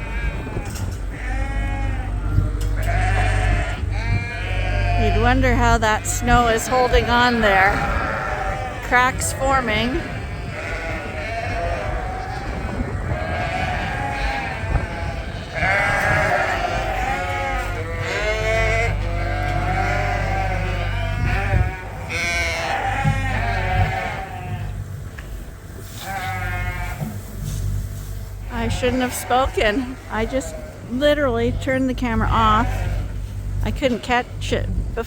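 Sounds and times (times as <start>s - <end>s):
sheep bleating: 0.0s - 24.8s, 25.9s - 27.2s, 28.4s - 34.5s
low rumble: 0.0s - 35.0s.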